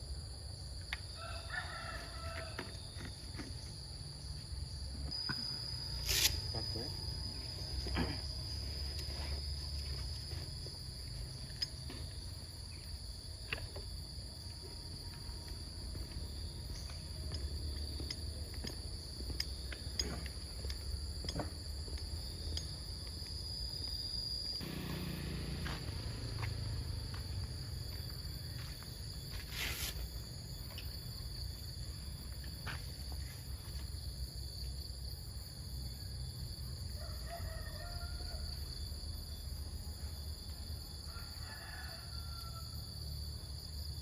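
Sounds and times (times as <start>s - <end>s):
insect chirring: 0.0s - 44.0s.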